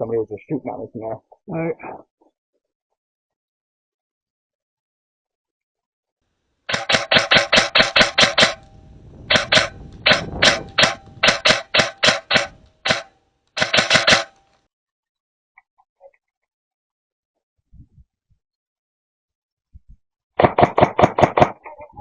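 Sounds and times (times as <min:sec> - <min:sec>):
airsoft gun snapping shots: 0:06.7 - 0:14.4, 0:20.4 - 0:21.6.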